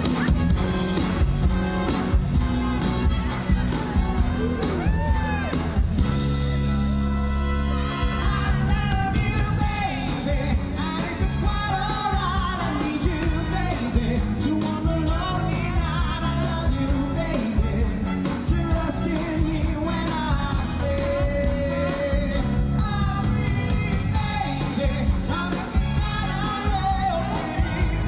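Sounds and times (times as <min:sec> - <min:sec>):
live band playing: 0:00.0 - 0:28.0
men singing rock and roll: 0:18.6 - 0:28.0.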